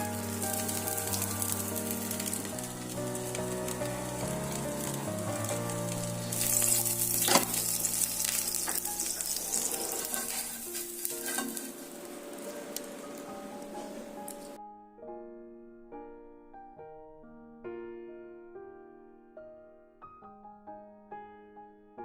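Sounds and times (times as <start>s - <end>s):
food sizzling in a pan: 0.0s - 14.6s
soft background music: 0.0s - 19.5s.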